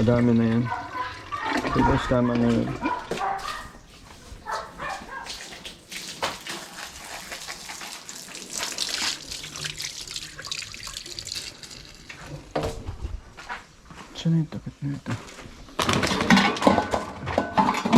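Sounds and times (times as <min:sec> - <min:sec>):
tap water running and splashing: 0:05.0 - 0:12.8.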